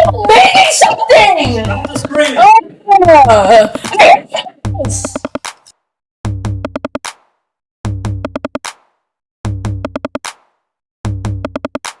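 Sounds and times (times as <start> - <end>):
drum machine beat loop: 0.0 - 5.7, 6.3 - 7.2, 7.9 - 8.8, 9.5 - 10.4, 11.1 - 12.0.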